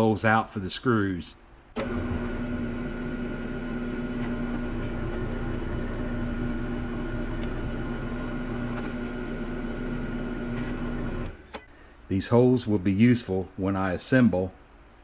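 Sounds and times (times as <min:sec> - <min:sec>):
drill press motor hum: 0:01.8 - 0:11.6.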